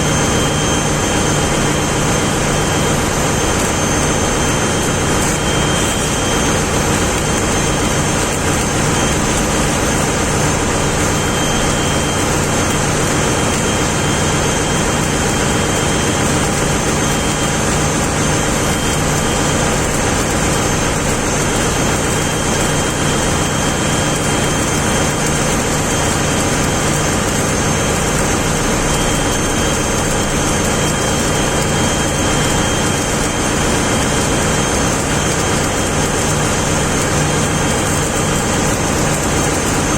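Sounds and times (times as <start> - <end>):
ship machinery hum: 0.0 - 23.2
high steady whine: 0.0 - 39.9.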